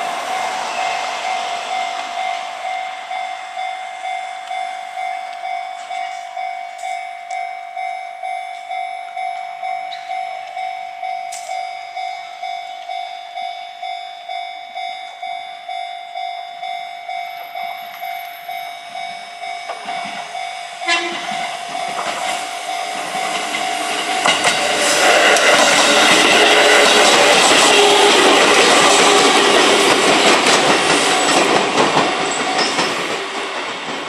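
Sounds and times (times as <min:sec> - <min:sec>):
level crossing bell ringing: 0:00.0 - 0:24.7
train running noise: 0:00.0 - 0:34.0
train horn toot: 0:20.8 - 0:21.5, 0:24.8 - 0:30.0.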